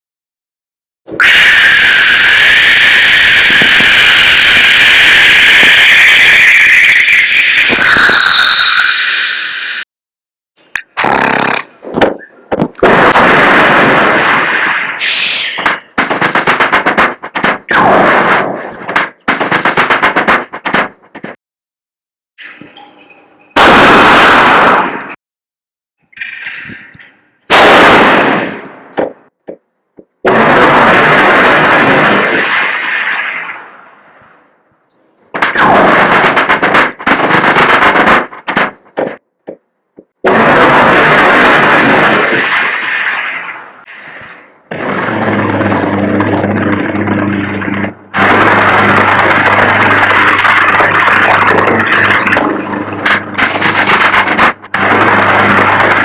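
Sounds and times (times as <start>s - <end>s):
mouth imitating machine-gun fire: 10.9s - 12.2s, 12.8s - 21.2s, 27.5s - 29.1s, 35.4s - 39.2s.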